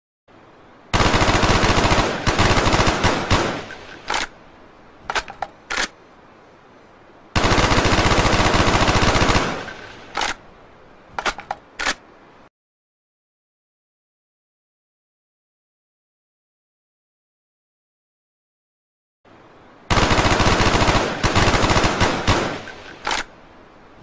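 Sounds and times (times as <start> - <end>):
rifle automatic fire: 1.0 - 4.3, 7.4 - 10.3, 19.9 - 23.2.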